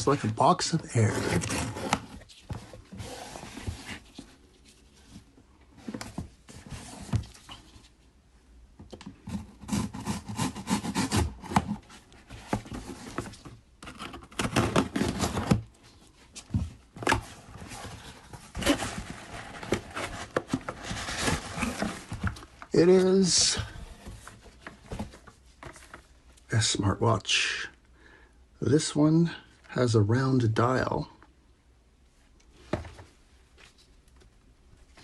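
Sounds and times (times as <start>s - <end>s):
packaging rustling and scraping: 0.1s - 8.0s, 9.2s - 26.1s
cardboard box opened: 0.9s - 4.4s, 9.3s - 15.7s, 16.4s - 26.0s.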